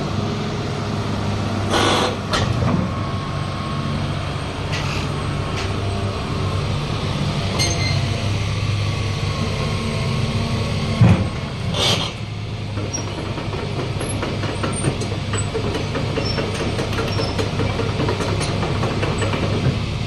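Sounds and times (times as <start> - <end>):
excavator diesel engine running: 0.0 - 20.0
loud clunk: 11.0 - 12.2.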